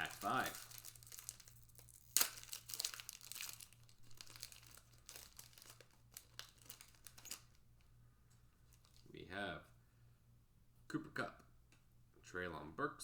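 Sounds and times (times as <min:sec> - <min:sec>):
foil pack ripping: 0:00.0 - 0:07.6
foil wrapper crinkling: 0:00.0 - 0:07.9, 0:08.6 - 0:09.1.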